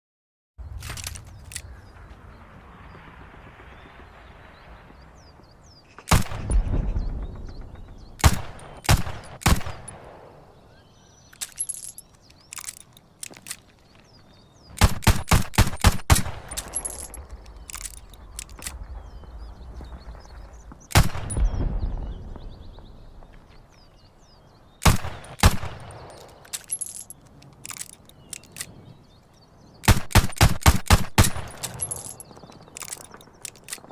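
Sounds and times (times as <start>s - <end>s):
gun handling clicks: 0.8s - 1.7s, 11.3s - 14.1s, 14.7s - 18.8s, 24.8s - 33.9s.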